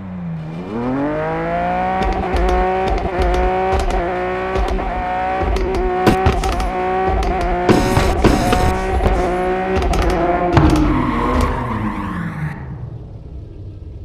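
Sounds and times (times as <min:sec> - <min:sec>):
sports car engine revving: 0:00.0 - 0:12.6
exhaust crackles and pops: 0:02.0 - 0:11.7.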